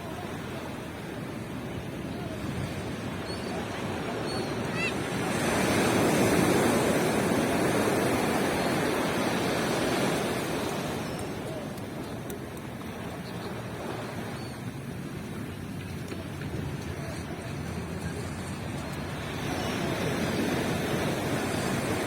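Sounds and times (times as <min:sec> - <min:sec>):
ocean waves breaking on beach: 0:00.0 - 0:22.0.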